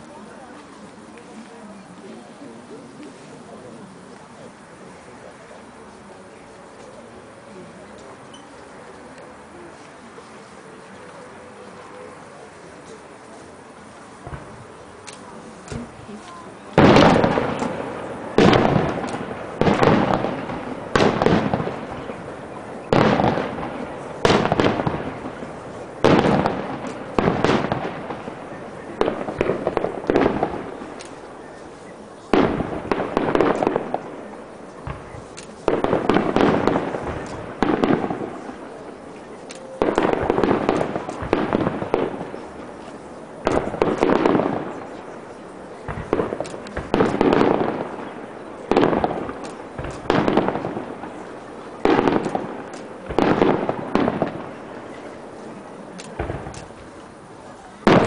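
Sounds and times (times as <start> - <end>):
firework shells bursting: 39.5 - 42.4, 48.7 - 54.6, 56.0 - 57.2.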